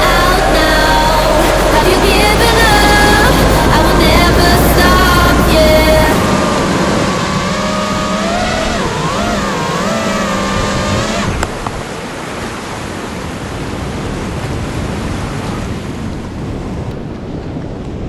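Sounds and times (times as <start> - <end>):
quadcopter motors whining: 0.0 - 11.6
wind noise: 0.0 - 18.0.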